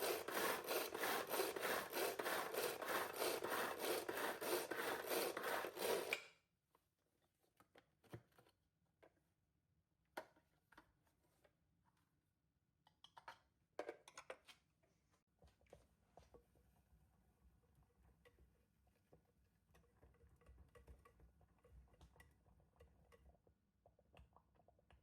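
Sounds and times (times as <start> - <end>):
rhythmic rubbing: 0.0 - 6.1.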